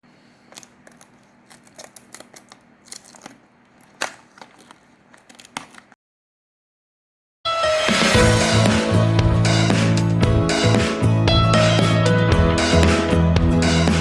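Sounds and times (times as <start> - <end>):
packaging clicking and crinkling: 0.5 - 6.0.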